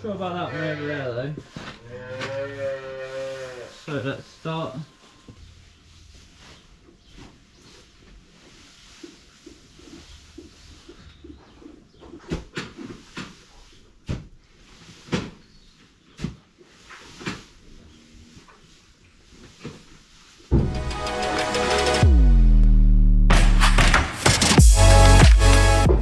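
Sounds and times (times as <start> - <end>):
knocks and scrapes mucking out straw: 1.4 - 20.6.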